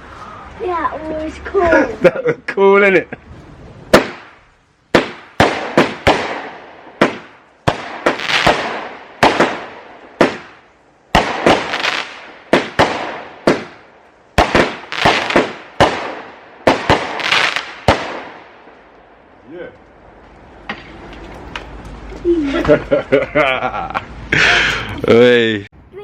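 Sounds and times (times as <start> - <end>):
fireworks bangs with hiss: 3.3 - 18.5.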